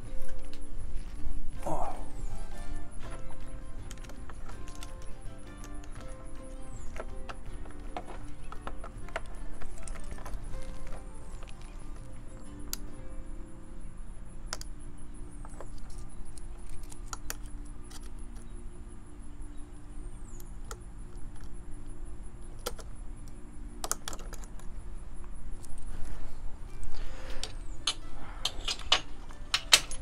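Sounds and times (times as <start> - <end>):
low steady hum: 0.0 - 30.0
light metallic clicks and clinks: 26.7 - 30.0.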